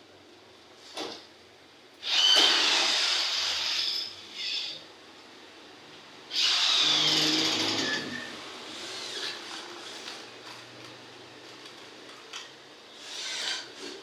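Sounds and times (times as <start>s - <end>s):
electric rivet gun whine: 2.0s - 4.8s, 6.3s - 10.6s.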